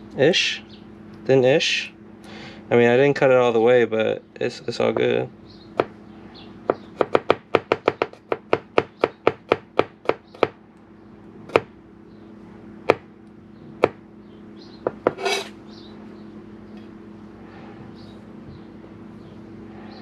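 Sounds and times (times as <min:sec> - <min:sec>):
knife chopping on cutting board: 0:14.9 - 0:15.5
knife scraping board: 0:15.0 - 0:15.6.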